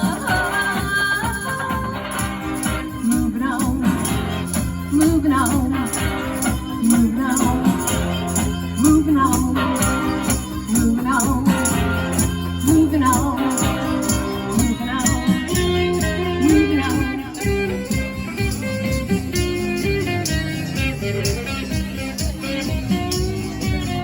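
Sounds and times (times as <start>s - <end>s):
person singing melody: 0.0s - 19.1s
band playing song: 0.0s - 24.0s
shaker rattle: 0.0s - 24.0s.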